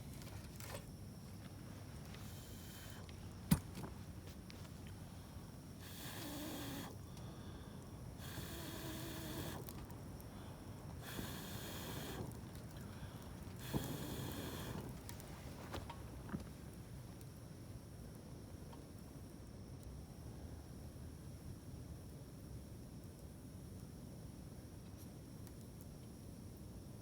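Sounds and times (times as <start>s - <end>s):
person breathing raspily: 5.2s - 9.6s.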